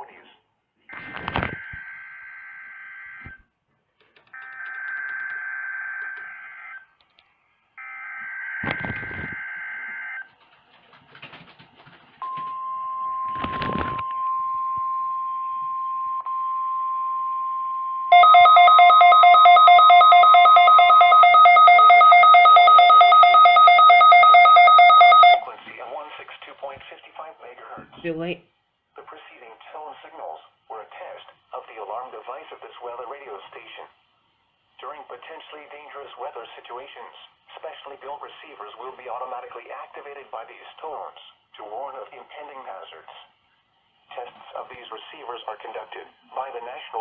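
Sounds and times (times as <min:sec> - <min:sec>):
rapidly pulsing alarm: 0:01.5 - 0:03.4, 0:04.4 - 0:06.9, 0:07.8 - 0:10.3, 0:18.1 - 0:25.5
steady alarm tone: 0:01.6 - 0:03.4, 0:04.4 - 0:06.9, 0:07.8 - 0:10.2, 0:14.1 - 0:25.4.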